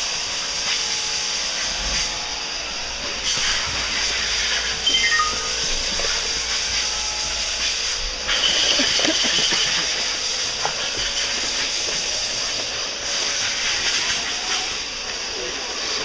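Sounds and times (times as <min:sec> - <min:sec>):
faint high whine: 0:01.6 - 0:09.9.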